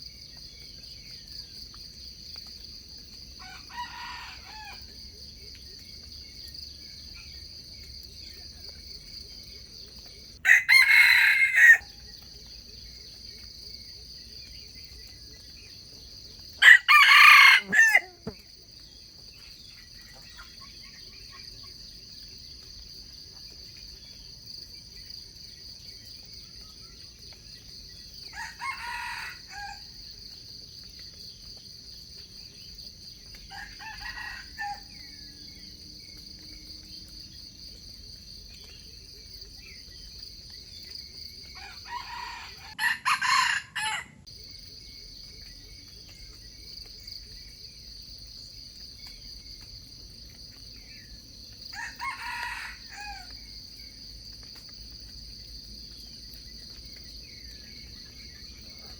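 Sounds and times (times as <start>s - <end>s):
roosters crowing: 3.4s - 4.8s, 10.4s - 12.0s, 16.6s - 18.4s, 28.3s - 29.9s, 33.5s - 35.1s, 41.6s - 44.2s, 51.7s - 53.3s.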